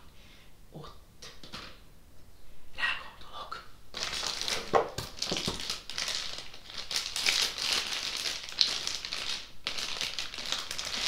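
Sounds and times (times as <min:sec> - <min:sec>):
plastic packaging crinkling: 0:03.9 - 0:11.0.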